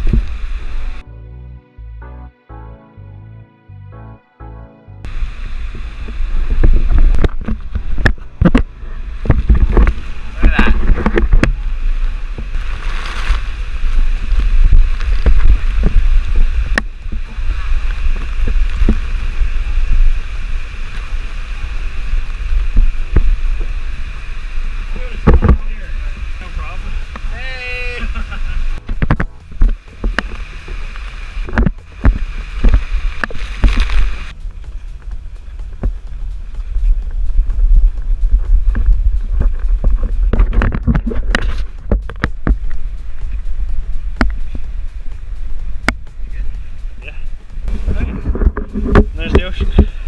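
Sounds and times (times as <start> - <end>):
high hiss: 0.0 - 1.0, 5.1 - 40.3, 41.6 - 48.0
wind buffeting microphone: 0.0 - 1.0, 5.0 - 50.0
waterfall roaring: 5.1 - 41.1.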